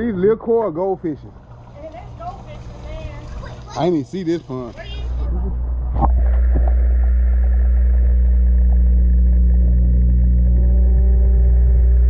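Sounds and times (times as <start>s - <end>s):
motor humming: 1.1s - 12.0s
faint higher tone: 8.4s - 12.0s.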